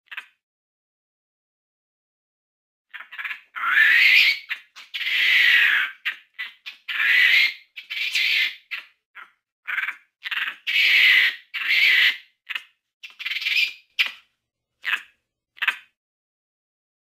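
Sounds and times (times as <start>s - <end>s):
monkey chirps: 0.1s - 0.4s, 2.9s - 16.0s
monkey growling calls: 2.9s - 12.2s.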